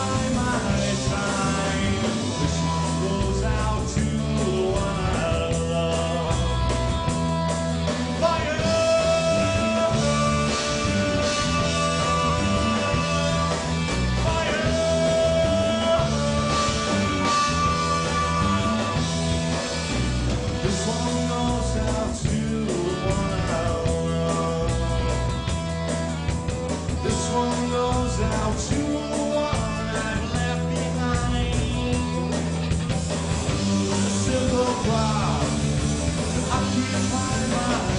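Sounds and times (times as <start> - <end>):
singer holding long notes: 0.0 - 25.3
rock band playing live: 0.0 - 37.9
stepping bass line: 0.0 - 37.9.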